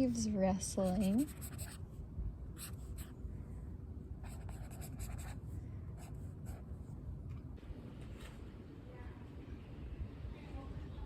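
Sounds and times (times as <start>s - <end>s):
low outdoor rumble: 0.0s - 11.0s
pencil scratching on paper: 0.8s - 1.8s, 4.2s - 5.4s.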